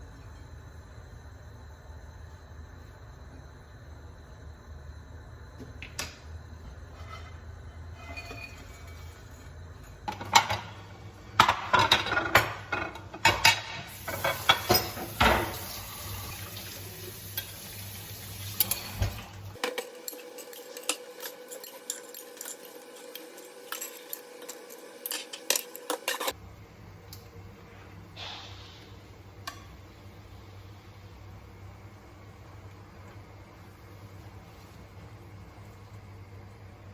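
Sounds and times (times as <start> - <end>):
dishes and cutlery clinking: 11.4 - 15.7, 18.6 - 26.3.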